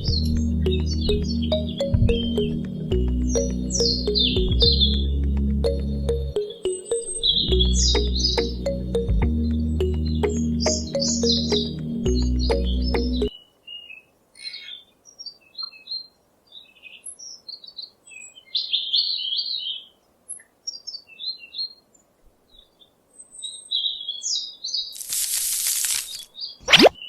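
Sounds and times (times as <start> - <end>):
music: 0.0 - 13.3
small birds chirping: 0.0 - 27.0
loud hiss: 25.0 - 26.2.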